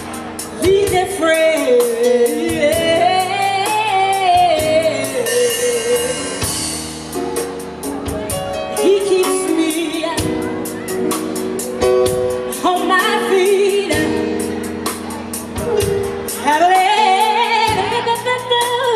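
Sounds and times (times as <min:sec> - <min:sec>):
backing band: 0:00.0 - 0:18.9.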